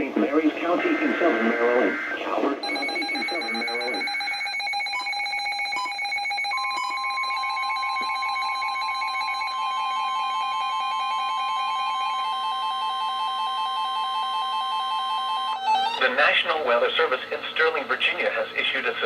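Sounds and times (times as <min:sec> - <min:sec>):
steady alarm tone: 0:00.0 - 0:16.2
rapid electronic beeping: 0:00.6 - 0:09.5.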